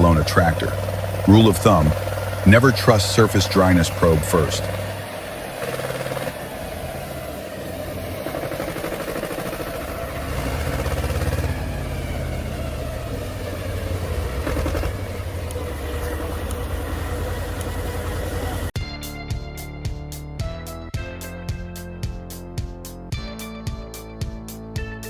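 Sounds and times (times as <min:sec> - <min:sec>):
tractor engine running under load: 0:00.0 - 0:18.8.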